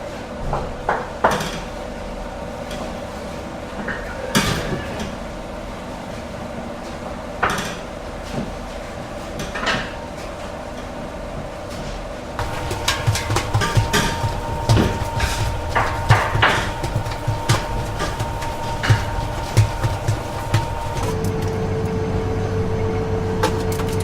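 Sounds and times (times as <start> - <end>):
bakery machinery hum: 0.0 - 24.0
metal clanks and knocks: 12.4 - 21.2.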